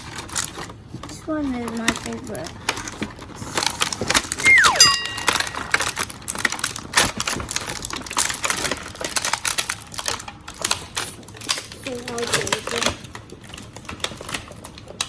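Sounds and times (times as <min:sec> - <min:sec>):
falling whistle-like tone: 0:04.4 - 0:05.7
short steady tone: 0:04.5 - 0:05.5.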